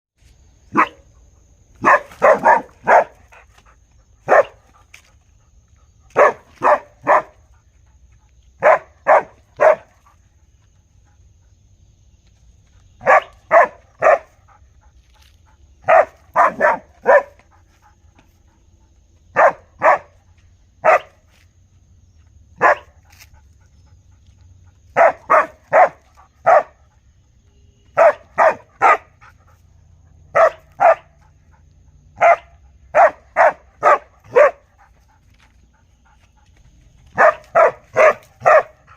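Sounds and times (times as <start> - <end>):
dog barking: 0.7 - 1.1, 1.8 - 3.4, 4.2 - 4.6, 6.1 - 7.4, 8.6 - 10.1, 13.0 - 14.4, 15.8 - 17.4, 19.3 - 20.2, 20.8 - 21.2, 22.6 - 23.0, 24.9 - 26.9, 27.9 - 29.4, 30.3 - 31.4, 32.1 - 34.9, 37.1 - 38.9.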